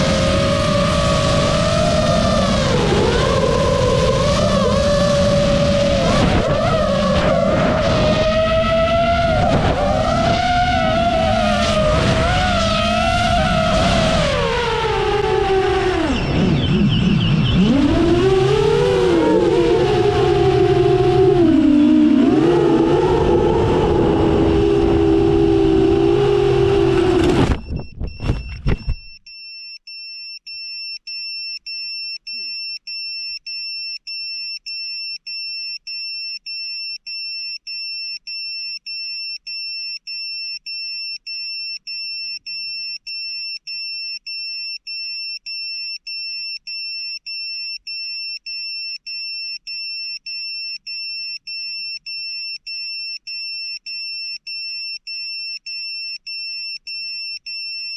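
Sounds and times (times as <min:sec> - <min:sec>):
drone propellers whining: 0:00.0 - 0:29.0
electronic beeper beeping: 0:27.5 - 0:57.9.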